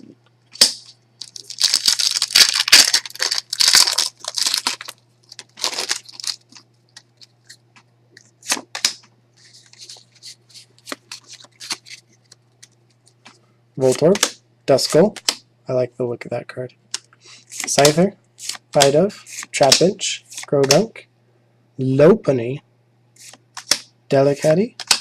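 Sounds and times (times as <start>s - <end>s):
foil wrapper tearing and crinkling: 1.2s - 6.6s, 10.9s - 12.0s
cards clicking: 23.2s - 23.9s.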